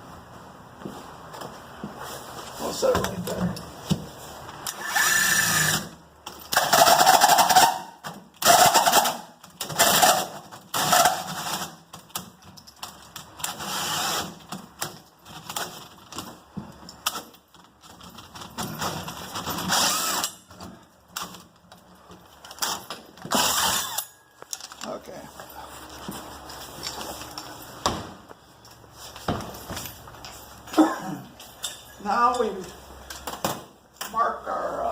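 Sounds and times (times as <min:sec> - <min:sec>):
power drill cutting into door: 0:04.7 - 0:05.9, 0:13.5 - 0:14.4, 0:19.6 - 0:20.4, 0:23.3 - 0:24.0.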